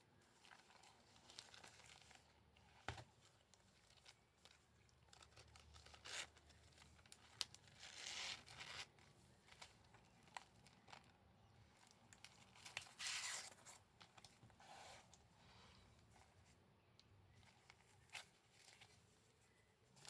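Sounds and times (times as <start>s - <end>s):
packaging tearing and crinkling: 3.6s - 11.1s, 12.1s - 14.3s.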